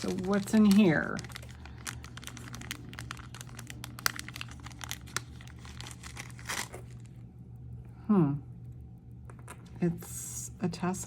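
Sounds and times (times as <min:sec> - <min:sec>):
packaging crinkling and rustling: 0:00.0 - 0:07.2
low steady hum: 0:00.0 - 0:11.0.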